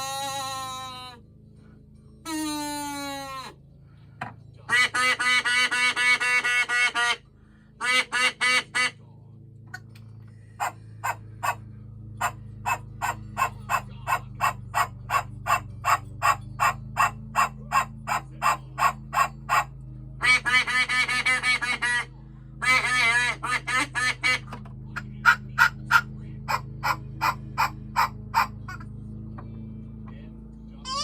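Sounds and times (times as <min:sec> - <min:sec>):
low steady hum: 0:00.0 - 0:31.0
duck quacking: 0:04.7 - 0:07.2, 0:07.8 - 0:09.0, 0:10.6 - 0:11.6, 0:12.2 - 0:28.9.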